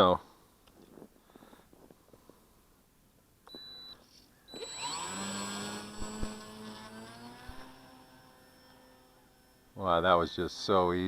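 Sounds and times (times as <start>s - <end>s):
model plane motor whine: 4.5s - 10.3s.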